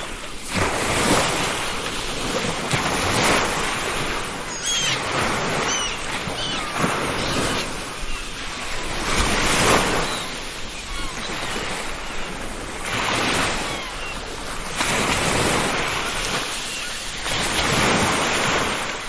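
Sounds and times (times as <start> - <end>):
ocean waves breaking: 0.0 - 19.0
gull cries: 3.8 - 14.8, 15.7 - 18.2.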